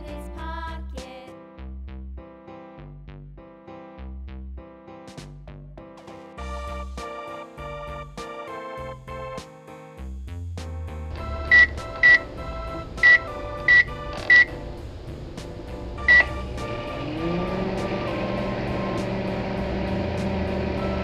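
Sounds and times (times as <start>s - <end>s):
background music: 0.0s - 21.0s
vehicle-like rising tone: 11.2s - 21.0s
short electronic beeps: 11.4s - 12.3s, 13.0s - 14.6s, 16.0s - 16.4s.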